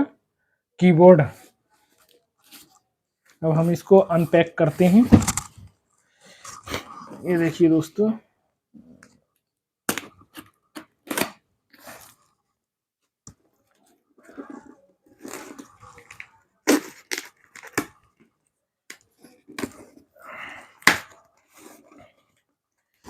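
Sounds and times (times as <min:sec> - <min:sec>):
packaging tearing and crinkling: 0:15.2 - 0:18.1.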